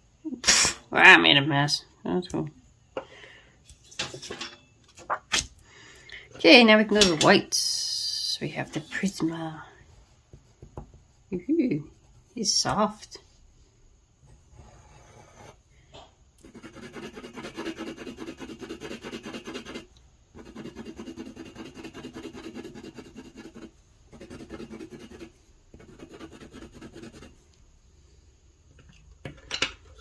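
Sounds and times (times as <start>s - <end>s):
pencil scribbling on paper: 14.6s - 15.6s, 16.4s - 27.4s.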